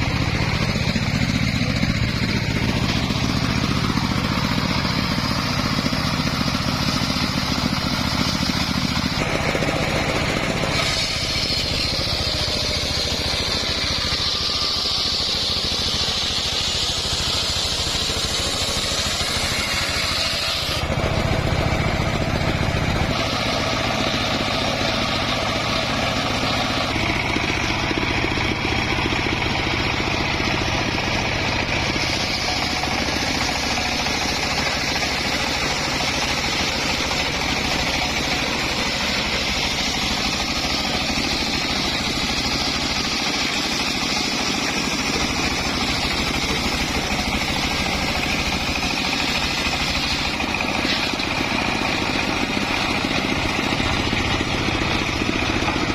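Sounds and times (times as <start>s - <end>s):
circular saw blade cutting wood: 0.0s - 55.9s
engine drone: 0.0s - 55.9s.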